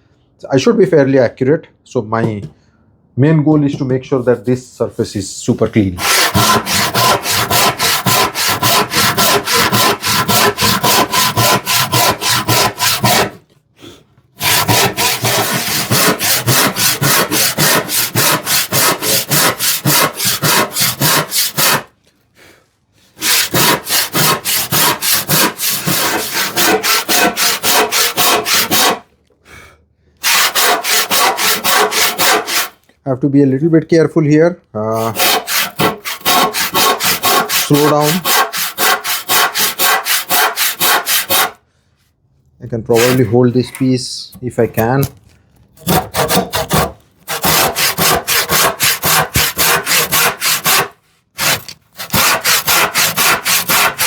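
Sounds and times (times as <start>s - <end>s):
hand saw cutting wood: 6.0s - 13.4s, 14.4s - 21.9s, 23.2s - 29.0s, 30.2s - 32.8s, 35.0s - 41.6s, 42.9s - 43.9s, 45.8s - 54.0s.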